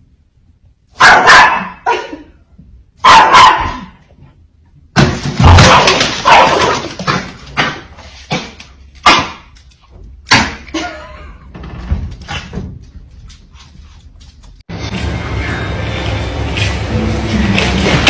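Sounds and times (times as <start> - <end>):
dog barking: 1.0 - 2.1, 3.0 - 4.0.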